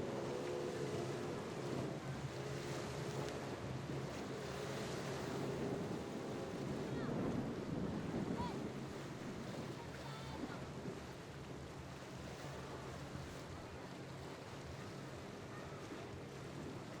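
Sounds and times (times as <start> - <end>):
boat engine humming: 0.0 - 17.0
wind on microphone: 5.0 - 11.2.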